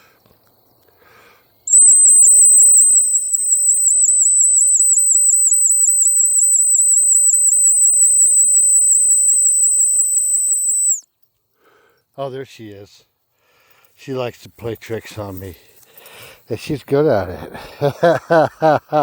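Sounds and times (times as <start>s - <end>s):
high-pitched warbling dog whistle: 1.7s - 11.0s.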